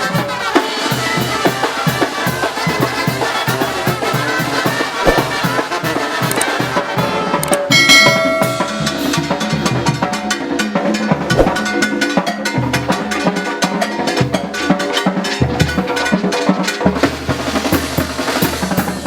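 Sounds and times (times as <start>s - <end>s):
held brass notes: 0.0s - 10.4s
brass band playing: 0.0s - 12.2s, 16.9s - 19.0s
drums and congas: 0.0s - 19.0s.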